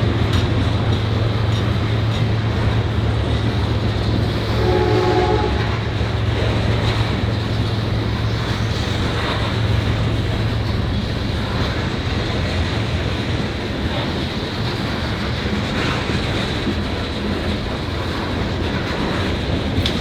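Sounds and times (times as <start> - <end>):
diesel locomotive drone: 0.0 - 20.0
rumble of train cars: 0.0 - 20.0
train horn: 3.8 - 7.2.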